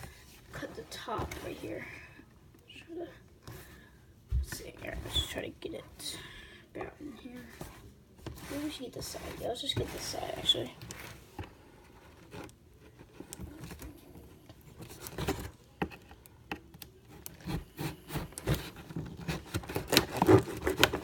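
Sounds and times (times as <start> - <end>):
knife cutting cardboard: 17.2 - 21.0.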